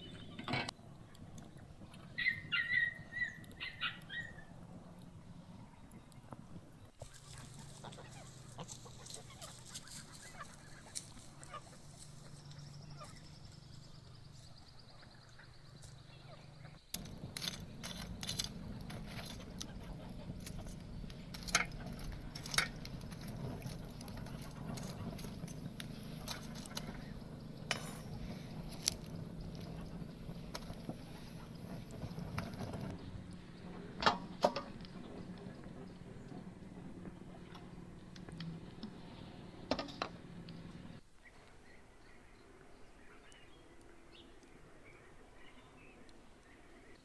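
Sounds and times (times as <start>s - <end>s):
steady low hum: 0.0s - 41.1s.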